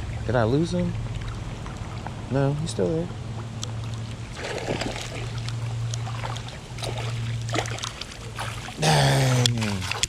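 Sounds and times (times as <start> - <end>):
steady low hum: 0.0 - 10.0
fish splashing in water: 3.5 - 10.0.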